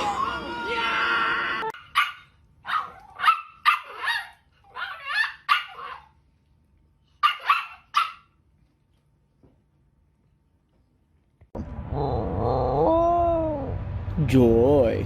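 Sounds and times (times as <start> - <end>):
dog barking: 1.8 - 6.1, 7.2 - 8.4.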